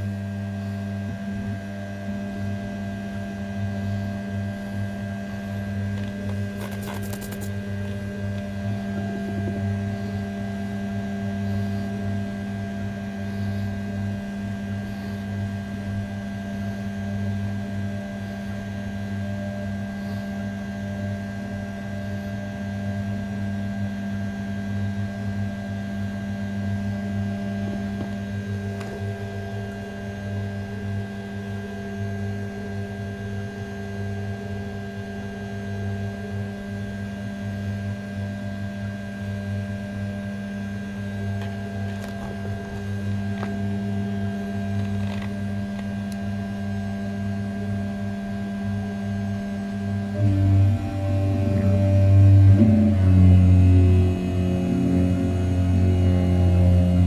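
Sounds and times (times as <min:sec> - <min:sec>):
milling spindle humming: 0:03.5 - 0:15.6, 0:50.0 - 0:57.0
rattle of clicks: 0:44.7 - 0:45.9.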